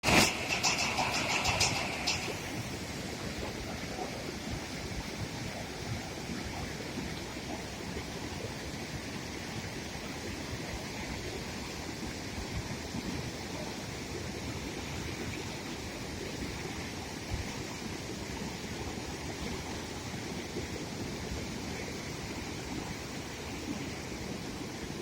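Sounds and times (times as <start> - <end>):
heavy rain: 0.0 - 4.6
running floodwater: 0.0 - 25.0.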